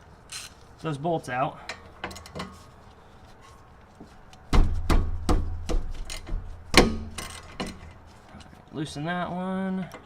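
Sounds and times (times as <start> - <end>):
socket wrench knocking on bolts: 4.6 - 7.8.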